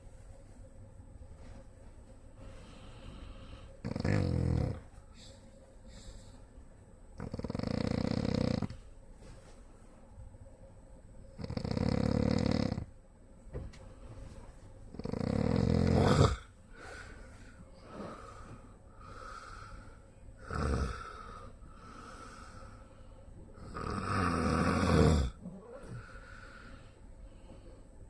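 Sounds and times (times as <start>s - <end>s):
quiet breaths: 0.0s - 10.5s, 11.2s - 28.0s
man snoring heavily: 3.8s - 4.8s, 7.2s - 8.8s, 11.4s - 12.9s, 15.0s - 16.5s, 20.4s - 22.5s, 23.6s - 25.4s.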